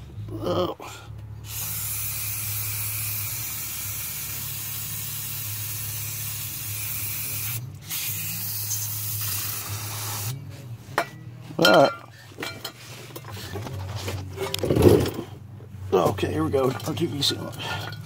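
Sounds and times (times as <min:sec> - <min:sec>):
aerosol spray can hissing: 0:01.5 - 0:10.4.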